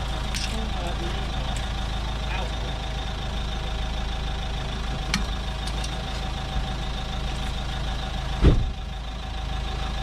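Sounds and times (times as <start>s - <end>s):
heavy handbrake clunk: 8.4s - 8.8s.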